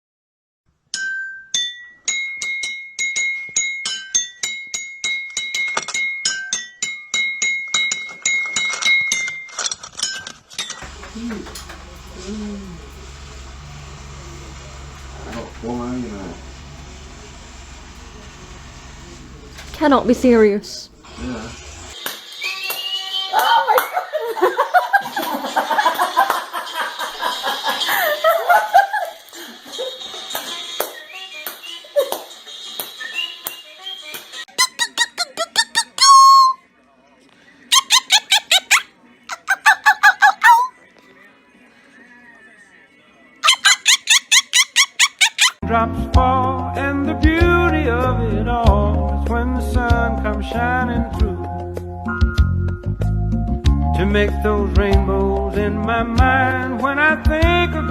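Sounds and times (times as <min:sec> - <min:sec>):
steady low hum: 0:10.8 - 0:22.0
rapid choppy laughter: 0:34.6 - 0:36.3, 0:37.7 - 0:40.7, 0:43.4 - 0:45.6.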